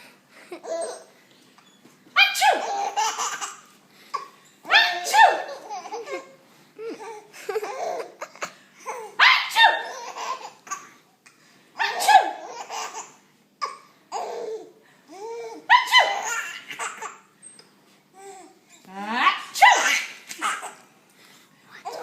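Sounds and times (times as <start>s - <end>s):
baby laughing hysterically: 2.4s - 3.7s, 4.8s - 6.4s, 7.0s - 8.4s, 9.6s - 10.8s, 11.8s - 13.2s, 15.8s - 17.2s
woman fake sneezing: 4.8s - 5.5s, 11.8s - 12.4s.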